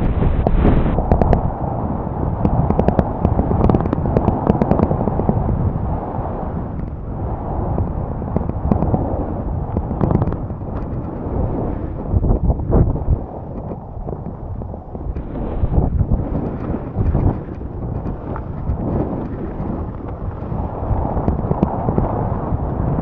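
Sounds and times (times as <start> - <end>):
snowboard scraping over snow: 0.0 - 1.0, 15.2 - 22.9
wind on microphone: 0.0 - 23.0
sharp crackles and clatters: 2.2 - 5.4, 7.7 - 23.0.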